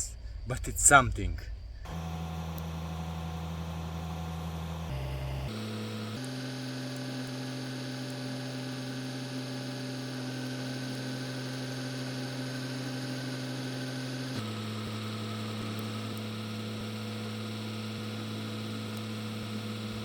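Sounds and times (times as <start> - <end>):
steady low hum: 0.0 - 6.2.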